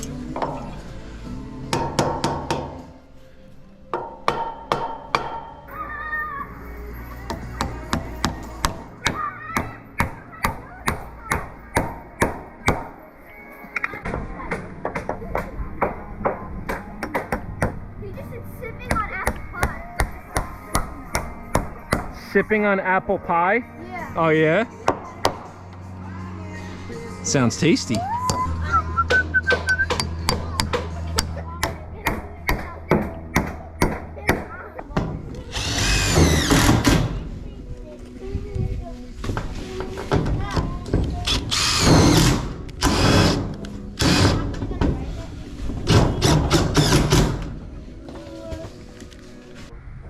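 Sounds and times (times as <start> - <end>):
hammer striking nails: 4.0 - 5.4
person whistling: 28.0 - 30.1.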